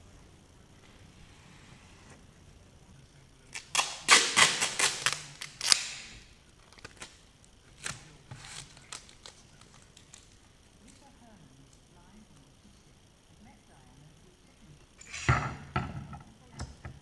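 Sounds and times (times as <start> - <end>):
hard objects clicking and knocking: 15.0 - 17.0.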